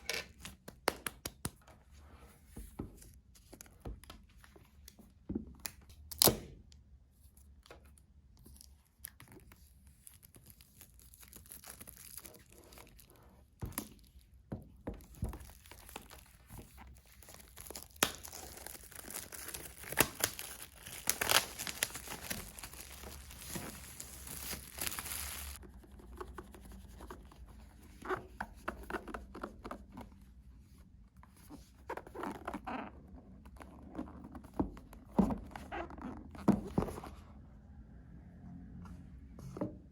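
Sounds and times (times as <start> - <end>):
wrapping tearing and crinkling: 8.5 - 14.2, 15.3 - 25.6.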